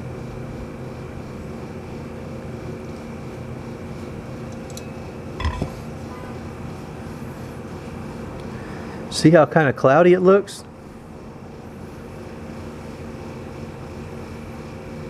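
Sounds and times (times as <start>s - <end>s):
machine hum: 0.0s - 9.2s
metallic clink: 4.5s - 5.8s.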